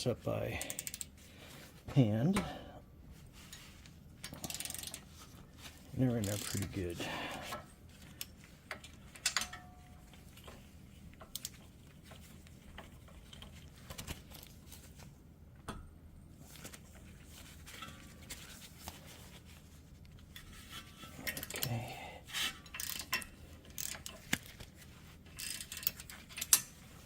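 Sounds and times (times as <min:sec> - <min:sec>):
low steady hum: 0:00.0 - 0:27.0
ratchet wrench clicking: 0:00.6 - 0:01.1, 0:04.3 - 0:05.0, 0:06.2 - 0:06.6, 0:22.7 - 0:24.2, 0:25.4 - 0:26.7.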